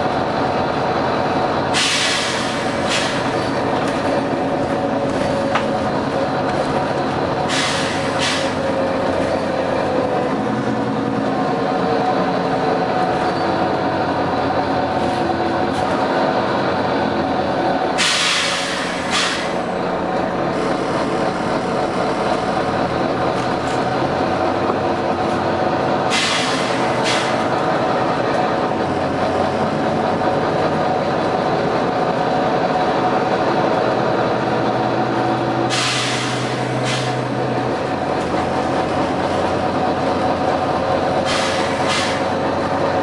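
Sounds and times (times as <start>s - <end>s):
bus engine droning: 0.0s - 43.0s
air hissing: 1.7s - 3.3s, 7.5s - 8.6s, 18.0s - 19.7s, 26.1s - 27.4s, 35.7s - 37.2s, 41.2s - 42.3s.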